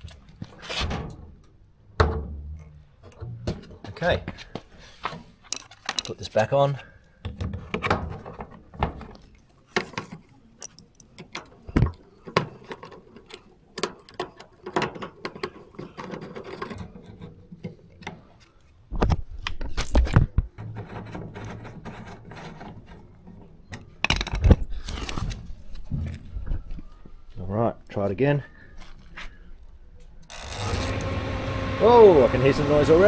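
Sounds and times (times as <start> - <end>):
panel clicks and rattles: 7.7 - 18.5.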